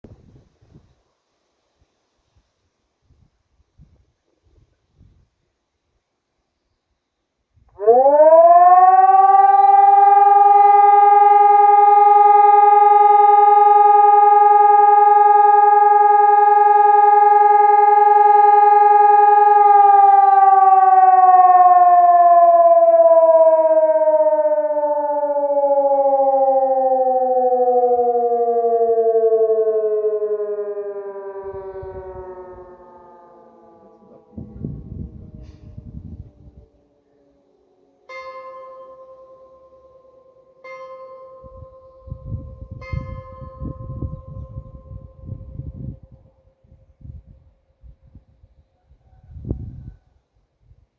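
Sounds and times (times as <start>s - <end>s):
civil-defence siren: 7.7s - 50.4s.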